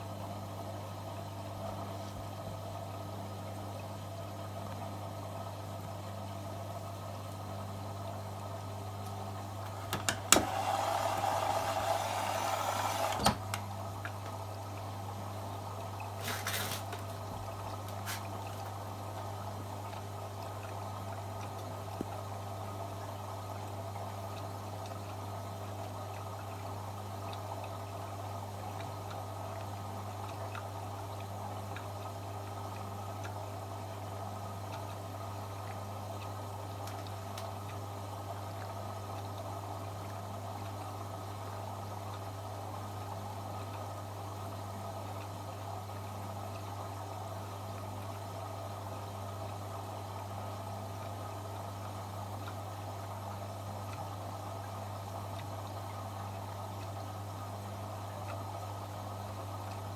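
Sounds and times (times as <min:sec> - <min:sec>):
washing machine low hum: 0:00.0 - 0:59.9
water flowing into washing machine: 0:09.7 - 0:14.2, 0:15.8 - 0:18.8.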